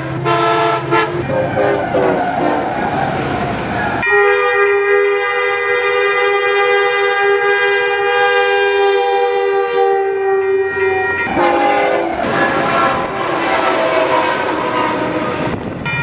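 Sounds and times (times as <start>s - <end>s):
train clattering on rails: 0.0s - 4.2s, 10.2s - 16.0s
locomotive air horn chord: 0.0s - 16.0s.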